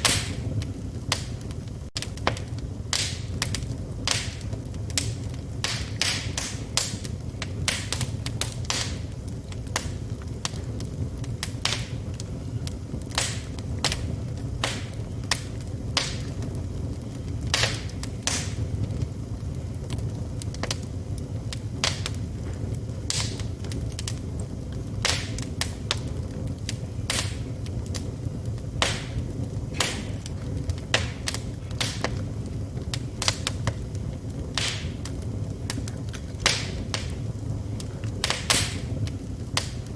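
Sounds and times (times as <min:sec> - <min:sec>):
low rumble of flames: 0:00.0 - 0:39.9
wood fire crackling and popping: 0:00.0 - 0:39.9.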